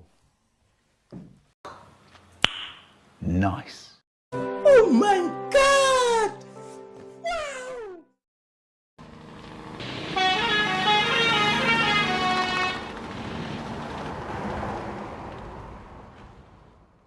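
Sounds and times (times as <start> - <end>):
street noise: 9.0 - 17.0
bus musical horn: 9.8 - 13.0.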